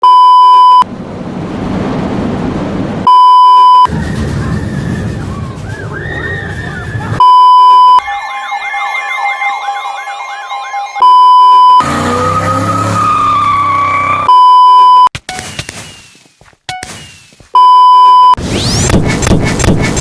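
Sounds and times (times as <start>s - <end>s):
rumbling: 0.9s - 3.1s, 3.9s - 7.2s
siren wailing and yelping: 3.4s - 14.9s.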